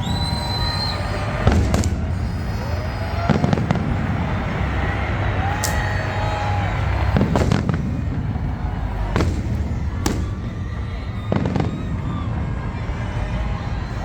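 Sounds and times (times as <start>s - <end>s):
fireworks bangs: 0.0s - 14.0s
steady low rumble: 0.0s - 14.0s.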